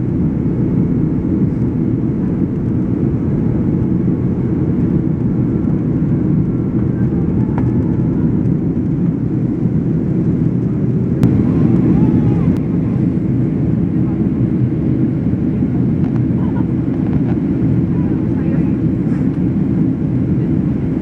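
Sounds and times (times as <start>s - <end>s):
airplane cabin engine noise: 0.0s - 21.0s.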